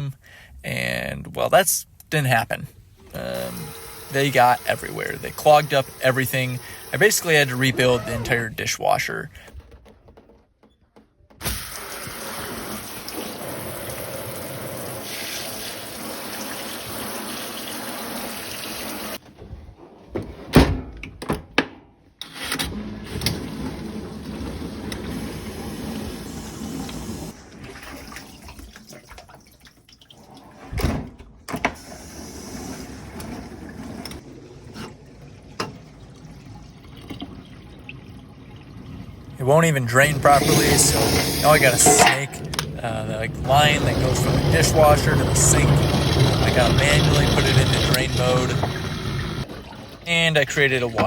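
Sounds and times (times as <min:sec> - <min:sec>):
water running and splashing: 0:03.3 - 0:08.4, 0:11.5 - 0:19.2, 0:32.0 - 0:51.0.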